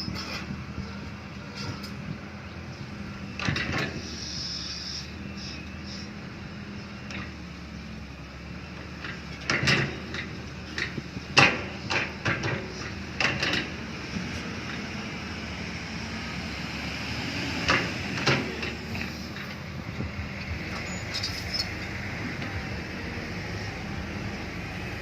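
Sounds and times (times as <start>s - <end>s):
excavator bucket squeal: 0.0s - 0.5s, 3.9s - 6.2s, 20.8s - 21.8s
diesel engine running: 0.0s - 25.0s.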